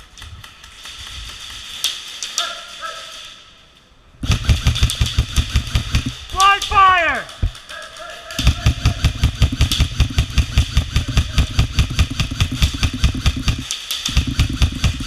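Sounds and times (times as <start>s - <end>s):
airsoft gun firing full-auto: 4.2s - 7.7s, 8.4s - 15.0s.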